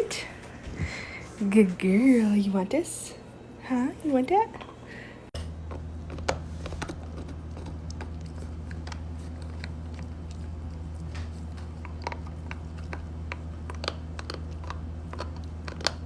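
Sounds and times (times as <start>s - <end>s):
steady low hum: 0.0s - 16.0s
dog teeth gnawing hard chew: 5.8s - 16.0s.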